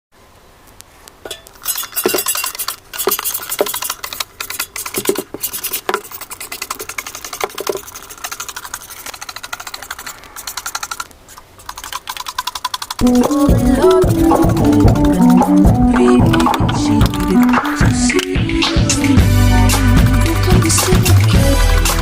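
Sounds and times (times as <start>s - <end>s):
scratchy scrubbing strokes: 1.6s - 17.8s.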